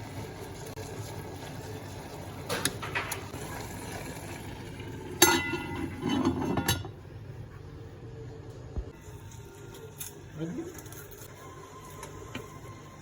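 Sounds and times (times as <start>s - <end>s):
cookware clattering: 5.2s - 7.0s
kitchen utensils clinking: 5.2s - 7.0s.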